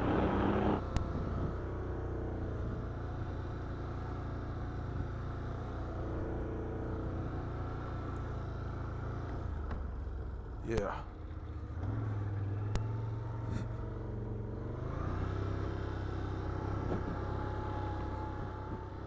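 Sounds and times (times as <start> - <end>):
rush of noise: 0.0 - 0.8
quad bike engine running: 0.0 - 19.0.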